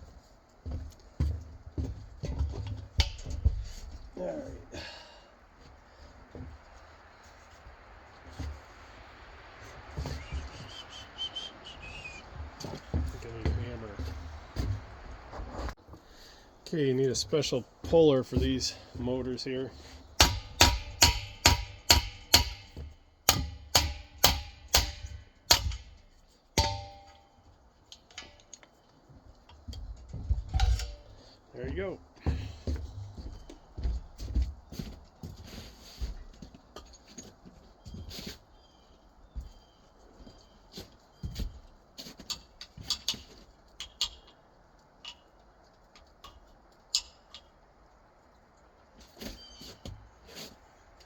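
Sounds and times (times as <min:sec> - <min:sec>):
hammer striking metal with ringing clang: 0:20.2 - 0:26.0, 0:26.6 - 0:27.4
metal tools clinking: 0:26.6 - 0:28.7.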